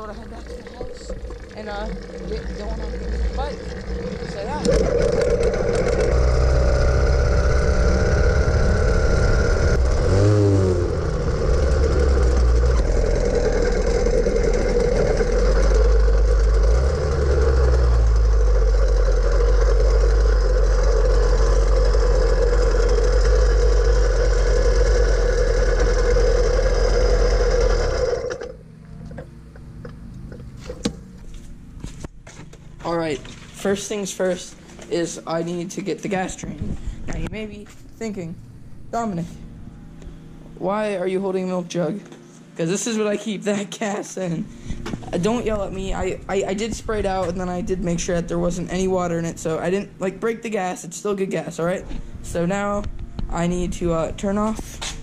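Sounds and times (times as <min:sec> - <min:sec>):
small motorized bicycle engine: 0:00.0 - 0:29.3
wind rumble on microphone: 0:36.4 - 0:37.5, 0:44.7 - 0:48.5.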